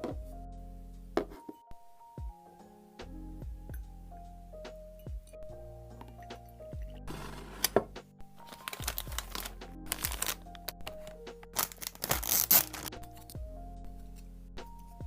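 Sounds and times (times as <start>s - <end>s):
background music with bass beat: 0.0s - 1.4s, 2.0s - 15.0s
packaging crinkling and tearing: 8.4s - 13.4s.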